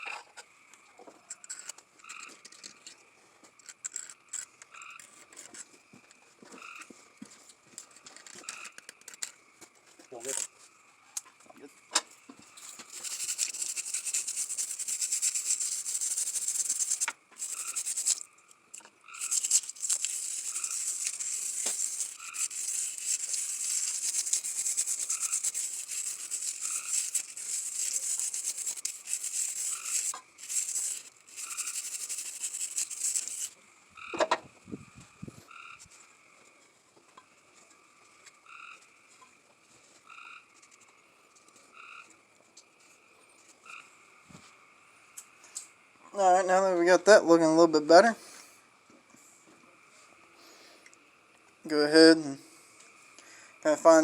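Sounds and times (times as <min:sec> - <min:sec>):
abrasive scrubbing hiss: 0:12.5 - 0:33.6.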